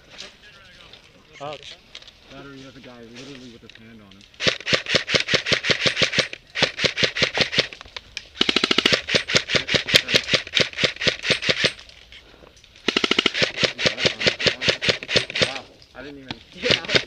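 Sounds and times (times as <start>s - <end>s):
airsoft guns firing bursts: 4.4s - 7.8s, 8.4s - 11.8s, 12.8s - 15.7s, 16.6s - 17.0s
faster gunfire rattle: 4.4s - 7.8s, 8.4s - 11.8s, 12.8s - 15.7s, 16.6s - 17.0s.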